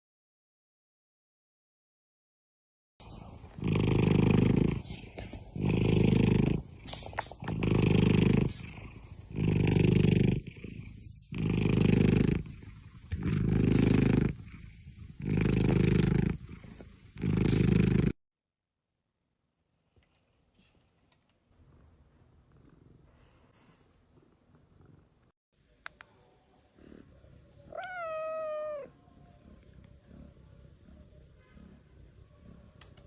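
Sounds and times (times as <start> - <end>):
cat purring: 3.0 - 18.2, 21.0 - 25.3, 26.6 - 33.0.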